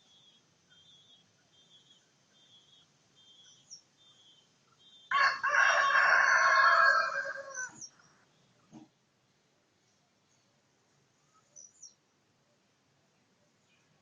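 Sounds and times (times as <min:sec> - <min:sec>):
rooster crowing: 0:05.1 - 0:07.8.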